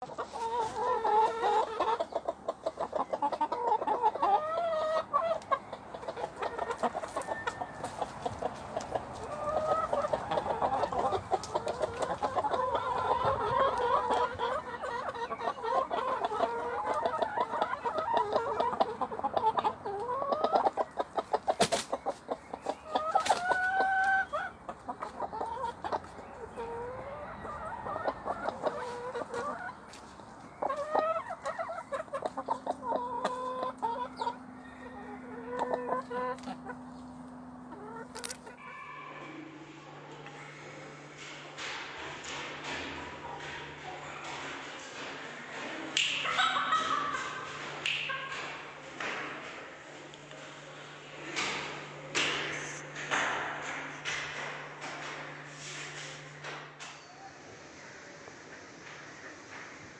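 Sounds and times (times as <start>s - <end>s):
chickens clucking: 0.0s - 59.9s
rooster crowing: 34.4s - 35.9s, 38.6s - 39.5s.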